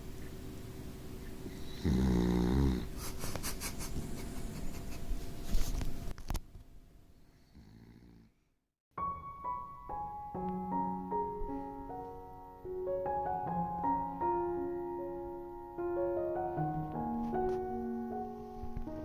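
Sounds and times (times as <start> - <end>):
puppy snoring: 1.4 - 3.4, 7.4 - 8.4
piano music: 8.9 - 19.0.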